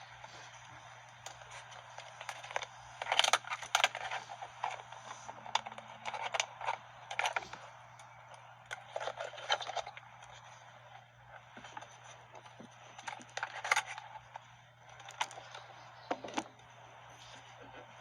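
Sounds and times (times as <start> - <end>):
clicks and scrapes of handled parts: 1.1 - 8.1, 8.7 - 15.4.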